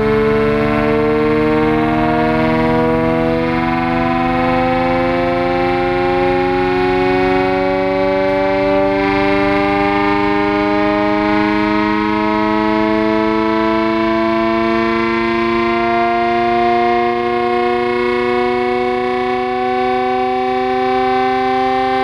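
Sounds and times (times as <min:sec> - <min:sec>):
air-raid siren rising: 0:00.0 - 0:22.0.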